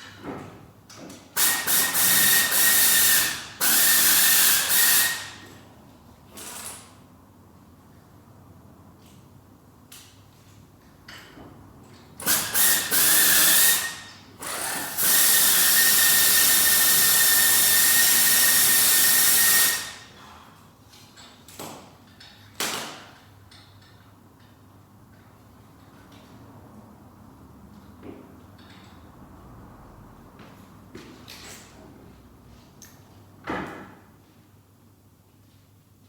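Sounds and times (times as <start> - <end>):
power tool whining hiss: 1.4 - 5.4, 12.2 - 20.0.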